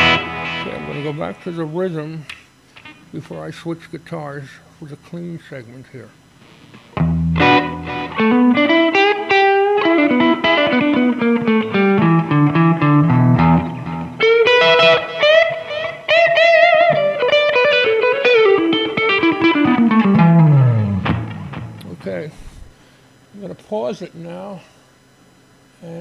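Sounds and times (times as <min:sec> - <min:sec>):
clean electric guitar melody: 0:00.0 - 0:01.4, 0:07.0 - 0:22.0.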